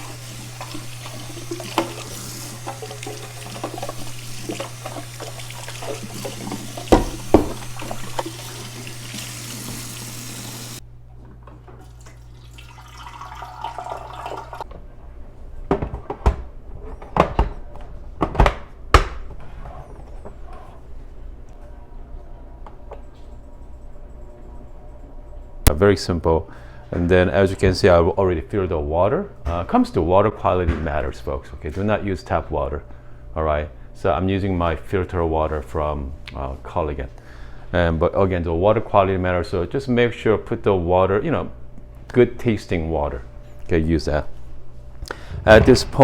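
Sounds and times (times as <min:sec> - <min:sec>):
tap water running into plastic tank: 0:00.0 - 0:10.8, 0:11.8 - 0:14.6
plastic tank knocks and clunks: 0:06.8 - 0:07.8.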